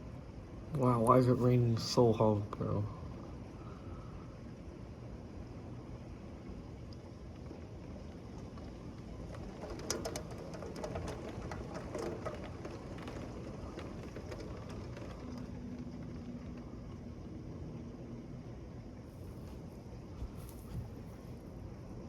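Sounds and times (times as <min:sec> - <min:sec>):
heavy rain pouring: 0:07.4 - 0:17.2.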